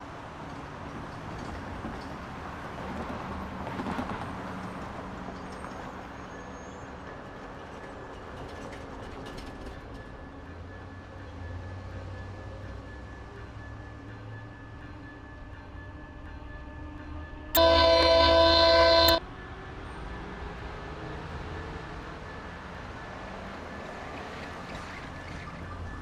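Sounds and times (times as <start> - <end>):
diesel locomotive rumbling: 17.6 - 19.4.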